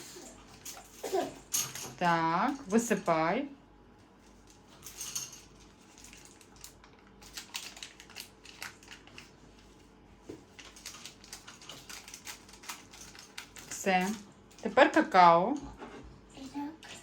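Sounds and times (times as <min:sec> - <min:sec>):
packet crinkling: 0:05.9 - 0:09.4, 0:10.6 - 0:13.7.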